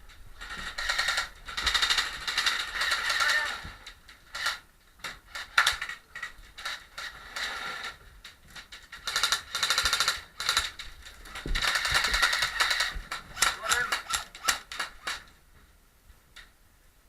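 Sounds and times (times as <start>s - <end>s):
rapid automatic fire bursts: 0.4s - 3.6s, 9.0s - 15.2s.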